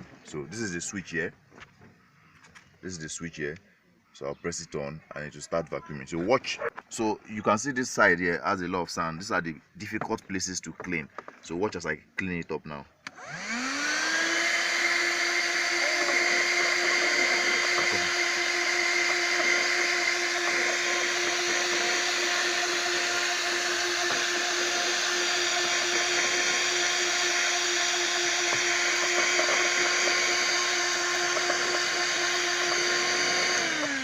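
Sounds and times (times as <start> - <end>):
car vacuum cleaner motor whine: 13.1 - 34.0.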